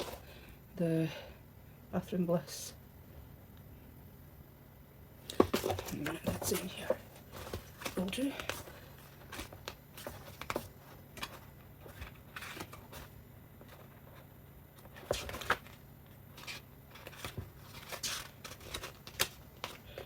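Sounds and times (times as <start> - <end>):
packaging rustling and clicking: 5.3 - 20.0.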